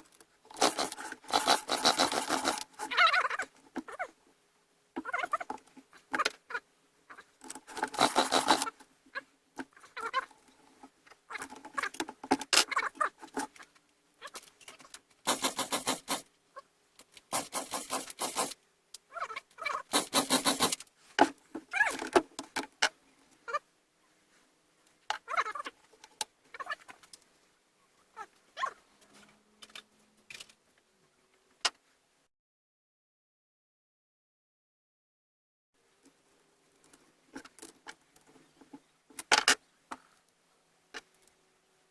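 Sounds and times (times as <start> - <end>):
chainsaw pull-start chattering: 0.5 - 2.9, 7.6 - 8.7, 15.3 - 16.3, 17.3 - 18.6, 19.9 - 20.8
handling clatter: 14.7 - 16.2.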